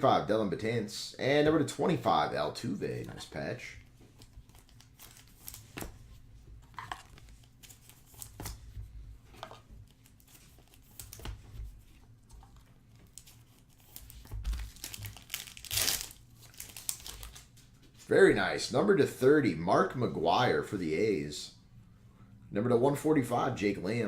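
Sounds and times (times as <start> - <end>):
wrappers crinkling and rustling: 4.0 - 6.0, 9.4 - 17.9.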